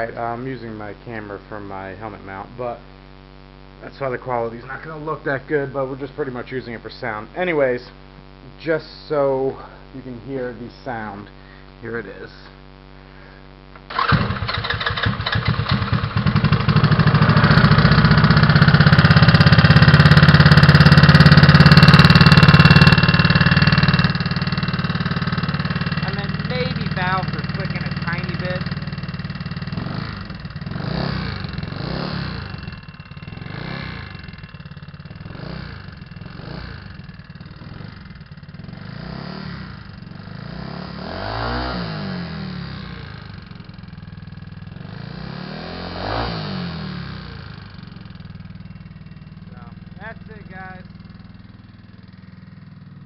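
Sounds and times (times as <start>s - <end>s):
scooter engine idling: 13.9s - 53.0s.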